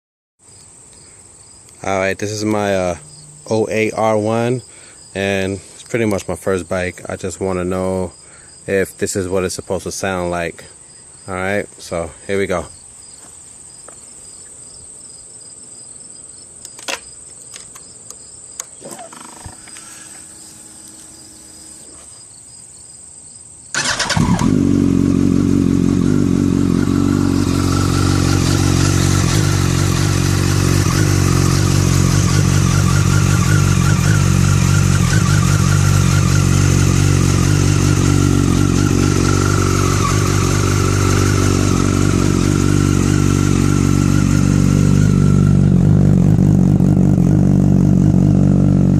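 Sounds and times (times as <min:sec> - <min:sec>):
crickets chirping: 0:00.4 - 0:24.8
motorcycle engine idling: 0:02.4 - 0:05.1, 0:23.8 - 0:48.9.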